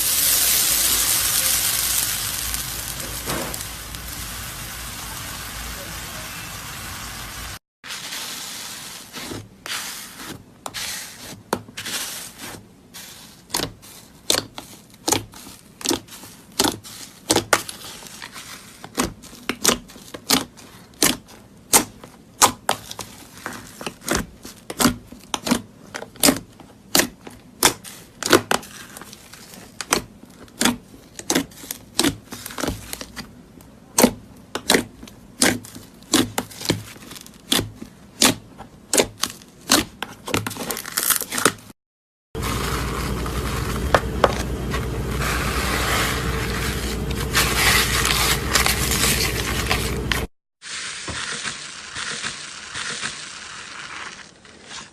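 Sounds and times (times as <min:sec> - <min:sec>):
slime crackling: 0:00.0 - 0:06.0.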